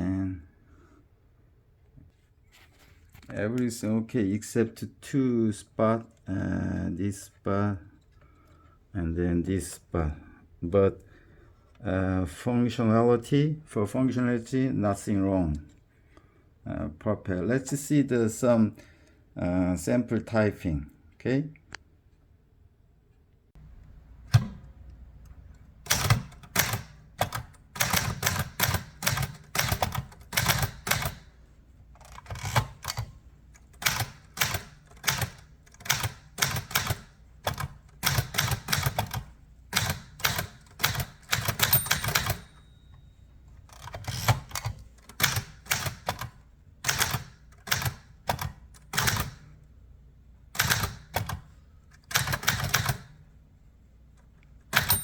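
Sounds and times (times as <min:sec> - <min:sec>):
typewriter keystroke clacks: 0:25.8 - 0:31.3, 0:32.0 - 0:42.6, 0:43.7 - 0:49.5, 0:50.6 - 0:53.2, 0:54.7 - 0:55.0
typewriter bell ring: 0:40.9 - 0:43.2, 0:54.8 - 0:55.0.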